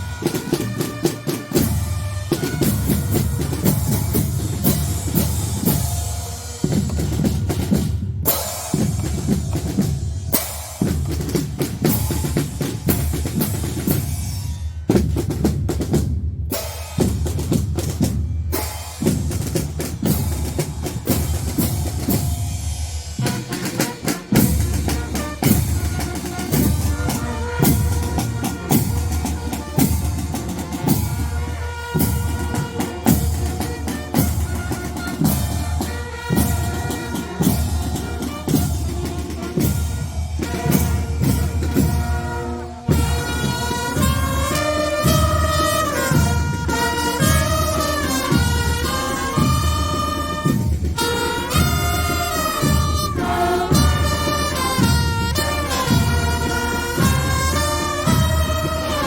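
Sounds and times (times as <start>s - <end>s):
marching drums: 0.0s - 59.0s
snare rolls: 43.0s - 53.7s.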